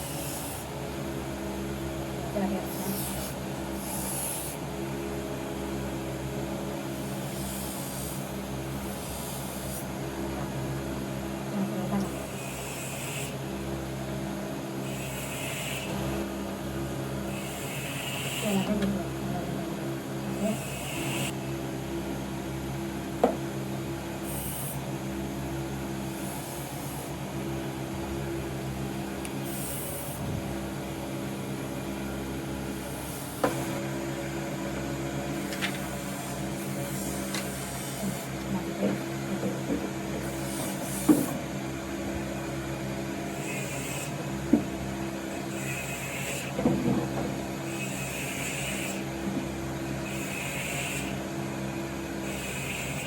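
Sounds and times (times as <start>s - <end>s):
steady machine hum: 0.0s - 53.0s.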